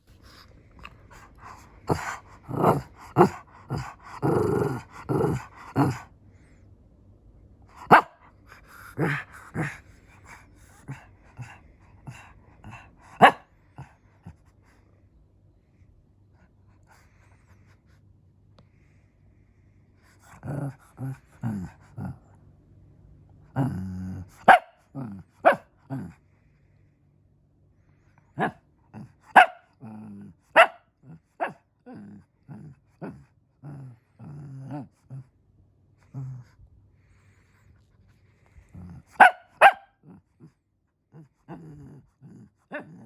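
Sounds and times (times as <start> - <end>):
dog growling: 0.2 - 6.1, 7.7 - 14.8, 20.0 - 22.4, 23.4 - 26.2, 28.4 - 35.3, 36.0 - 43.0
dog barking: 7.8 - 8.2, 13.2 - 13.4, 24.4 - 24.8, 25.4 - 25.7, 28.4 - 28.6, 29.3 - 29.7, 30.6 - 31.6, 39.2 - 40.0.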